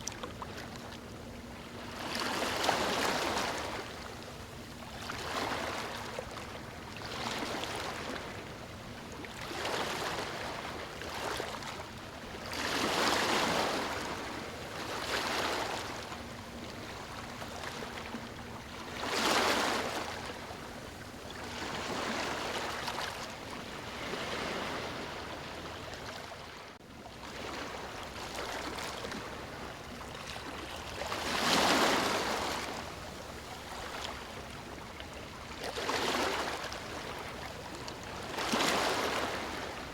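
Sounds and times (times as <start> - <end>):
ocean waves breaking on beach: 21.4 - 29.6, 30.6 - 39.9.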